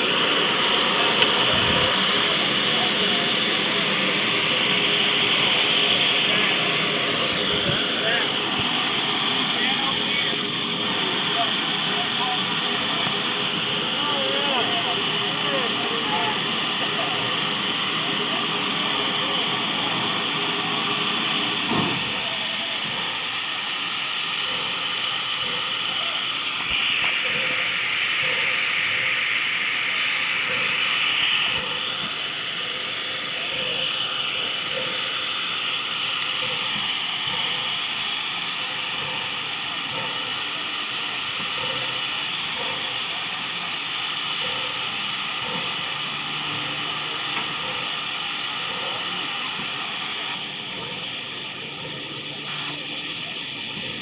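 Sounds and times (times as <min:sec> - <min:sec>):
steam locomotive hissing: 0:00.0 - 0:54.0.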